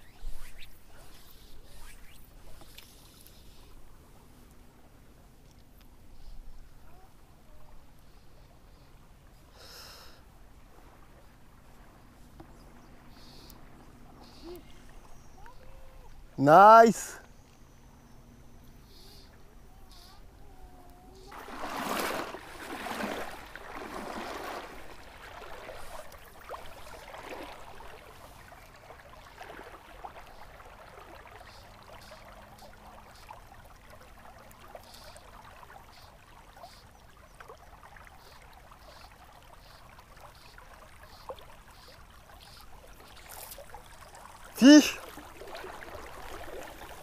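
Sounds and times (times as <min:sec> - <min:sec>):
river flowing: 0:21.1 - 0:47.0
water splashing: 0:21.3 - 0:47.0.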